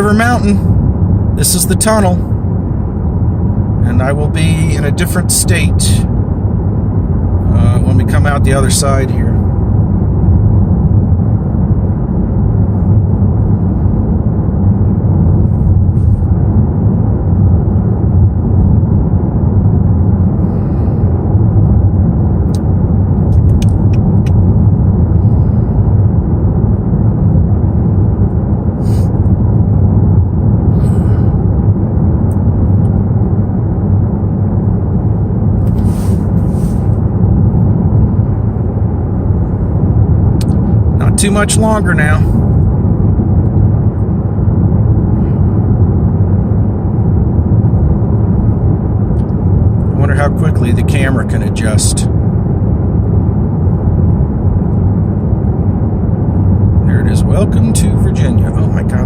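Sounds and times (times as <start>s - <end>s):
road noise rumble inside car: 0.0s - 59.0s
short hisses and clicks: 35.7s - 36.9s.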